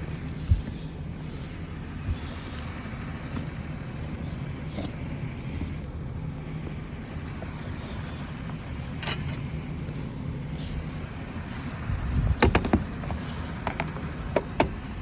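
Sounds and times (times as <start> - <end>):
engine humming: 0.0 - 15.0
sharp knocks: 12.4 - 13.1.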